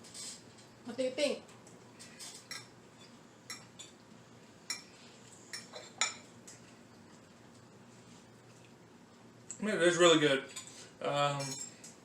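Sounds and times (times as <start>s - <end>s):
cutlery clinking on a plate: 2.2s - 4.0s, 5.5s - 6.6s.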